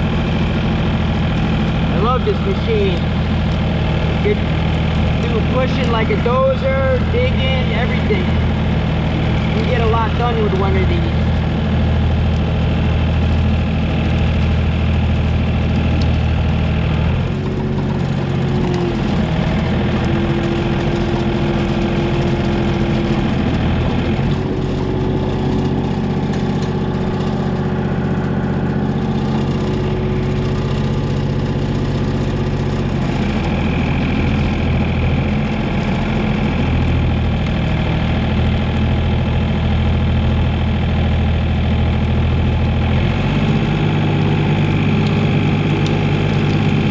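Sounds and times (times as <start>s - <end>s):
thin steady whine: 0.0s - 16.8s
excavator diesel engine running: 0.0s - 46.9s.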